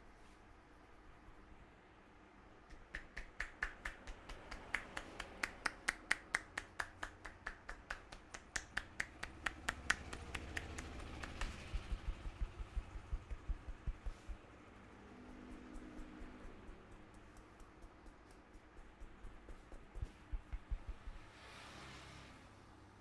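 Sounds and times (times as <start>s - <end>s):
hands making sharp clicks: 2.6s - 14.4s, 15.3s - 21.2s
soft dull thuds: 11.6s - 14.4s, 18.8s - 21.2s.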